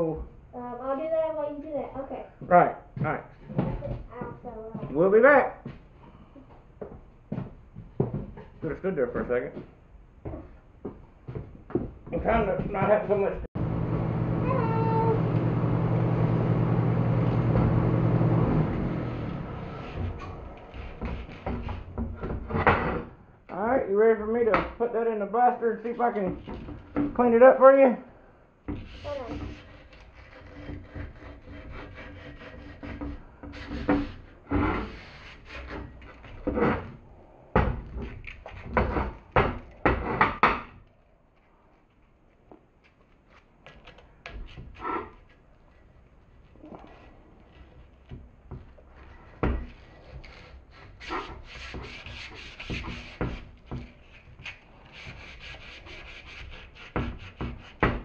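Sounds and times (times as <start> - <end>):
electric motor humming: 13.6 - 21.6
parts knocking and clunking: 15.2 - 23.2, 48.0 - 50.3.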